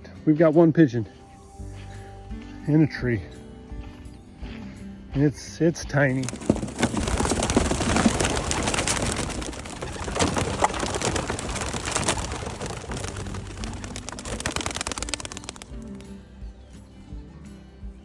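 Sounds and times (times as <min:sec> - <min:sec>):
pigeon wings clapping: 0:06.1 - 0:16.2.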